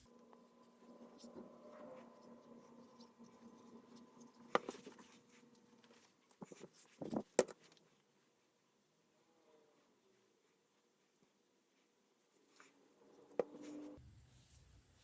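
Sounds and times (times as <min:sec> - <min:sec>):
low steady hum: 0:00.0 - 0:07.3.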